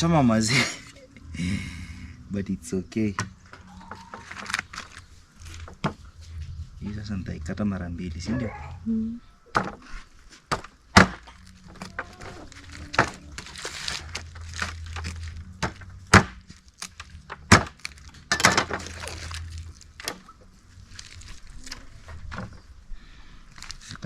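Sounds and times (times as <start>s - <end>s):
meat and bone crunching: 11.0s - 22.3s, 23.4s - 24.0s.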